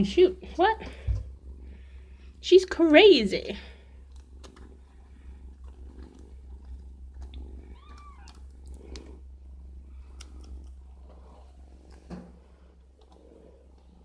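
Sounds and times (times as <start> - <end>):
cat purring: 0.0 - 14.0
faint clicks: 5.6 - 9.2.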